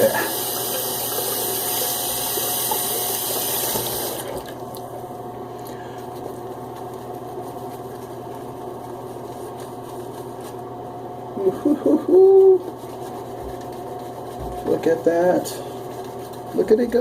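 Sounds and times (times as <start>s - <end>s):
faucet water running into sink: 0.0s - 4.9s.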